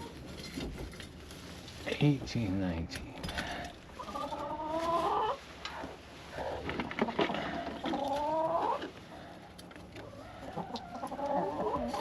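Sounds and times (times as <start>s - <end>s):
hens calling: 3.4s - 12.0s.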